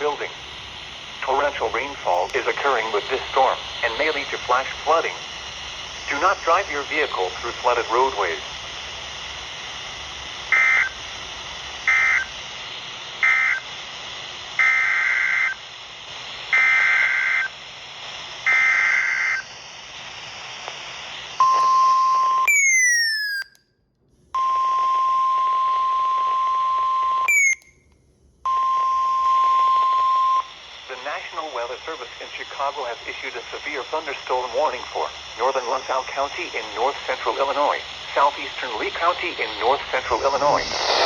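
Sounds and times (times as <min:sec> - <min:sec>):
steady warning alarm tone: 0:10.5 - 0:11.0, 0:11.8 - 0:12.4, 0:13.2 - 0:13.7, 0:24.4 - 0:27.7
buzzy two-pitch data bursts: 0:38.1 - 0:41.0
quick falling sweeps: 0:40.1 - 0:41.0.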